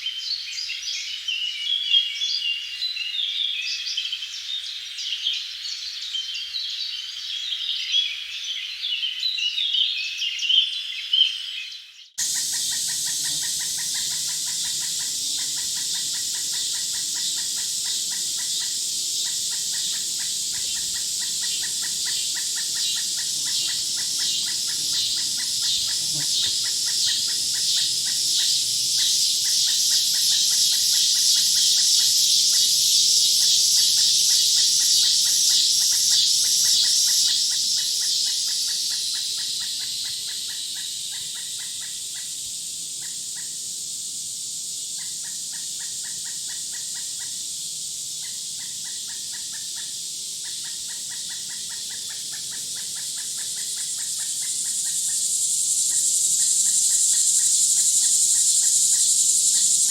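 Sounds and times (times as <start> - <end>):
chorus of birds: 0.0 - 42.3
rapid repeated chirps: 12.2 - 40.3
high insect buzz: 12.2 - 59.9.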